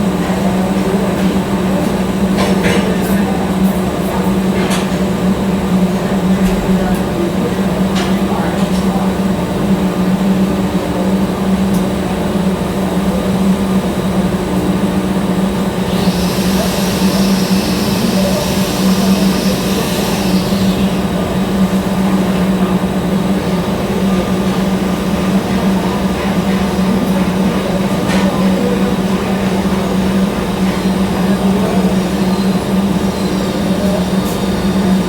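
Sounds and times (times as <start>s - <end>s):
welder humming and buzzing: 15.6s - 21.7s
high hiss: 15.9s - 21.0s.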